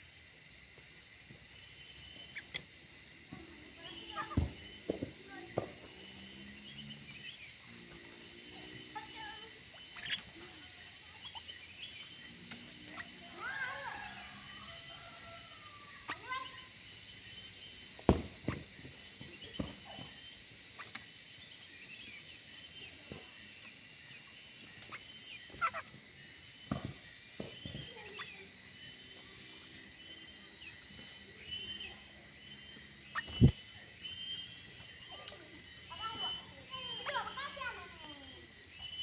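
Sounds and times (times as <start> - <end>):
small birds chirping and twittering: 0.0 - 39.0.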